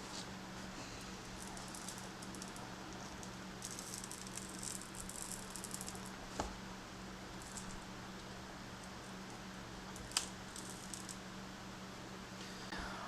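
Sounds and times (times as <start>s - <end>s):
steady low hum: 0.0s - 13.0s
glass crackling and ticking: 1.3s - 6.2s, 7.4s - 7.8s, 10.0s - 11.2s.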